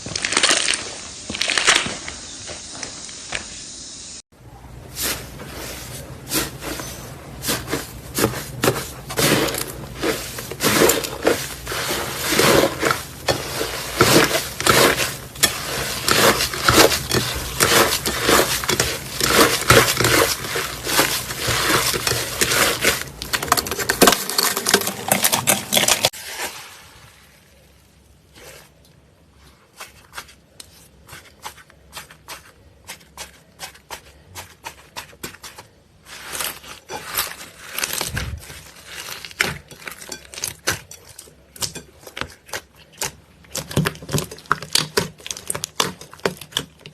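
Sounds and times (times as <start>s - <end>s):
slime crackling and popping: 0.0s - 2.1s.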